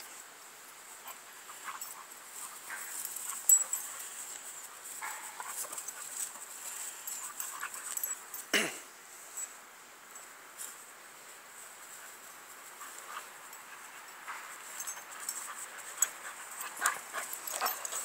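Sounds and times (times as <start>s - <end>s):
dogs scuffling: 1.0s - 8.5s, 11.5s - 18.0s.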